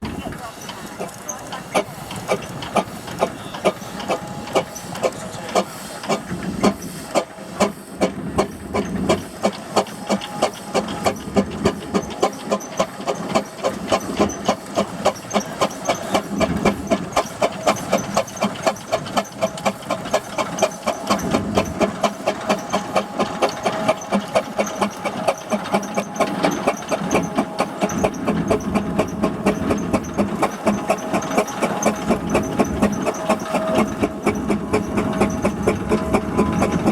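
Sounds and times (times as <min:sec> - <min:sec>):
hissing steam: 0:00.0 - 0:36.9
steam engine exhaust chuffing: 0:00.0 - 0:36.9.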